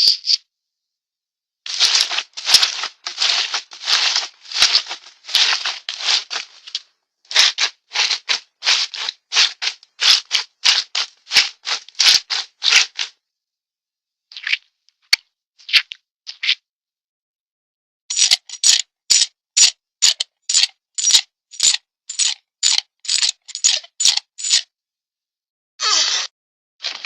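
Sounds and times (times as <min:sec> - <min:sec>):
rattle shaking: 0:01.7 - 0:13.1, 0:18.1 - 0:24.6.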